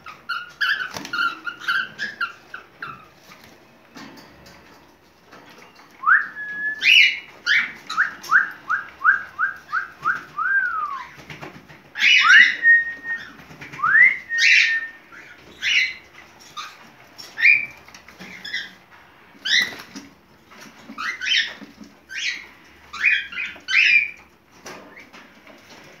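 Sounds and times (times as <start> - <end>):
cockatiel whistling: 6.0 - 11.2, 12.0 - 16.0.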